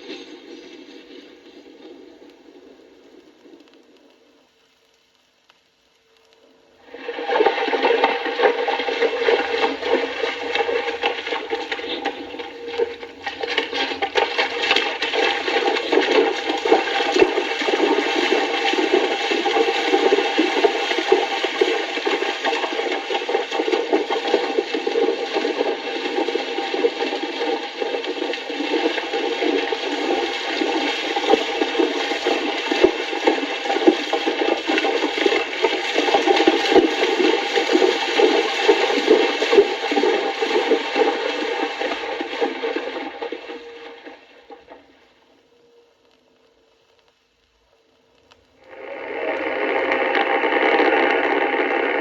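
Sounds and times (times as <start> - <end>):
horses splashing through water: 6.9 - 45.2.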